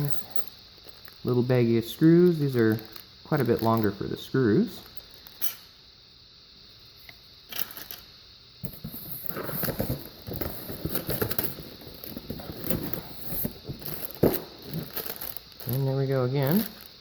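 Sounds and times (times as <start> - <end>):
rustling and crinkling packaging: 8.6 - 17.0
plastic bags rustling: 8.8 - 17.0.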